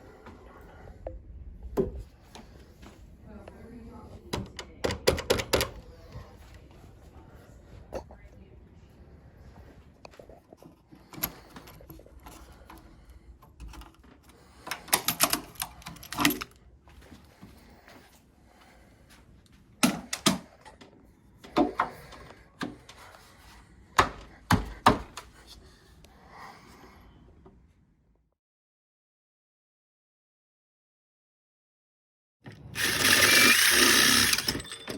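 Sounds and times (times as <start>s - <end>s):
metal door lock clicks and knocks: 4.4s - 5.8s.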